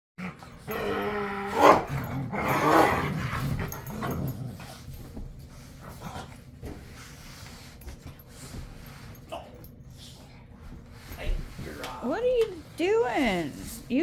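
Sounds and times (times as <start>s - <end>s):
dog growling and snarling: 0.2s - 4.9s.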